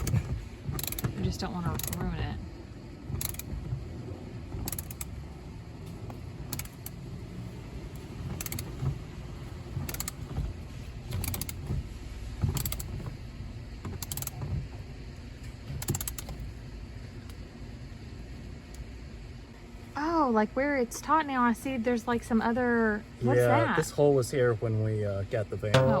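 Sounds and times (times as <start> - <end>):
ratchet wrench clicking: 0.0 - 1.1, 1.7 - 2.0, 3.2 - 3.5, 4.6 - 5.2, 6.5 - 7.0, 8.3 - 8.7, 9.8 - 10.2, 11.1 - 11.6, 12.5 - 13.0, 13.9 - 14.4, 15.8 - 16.4.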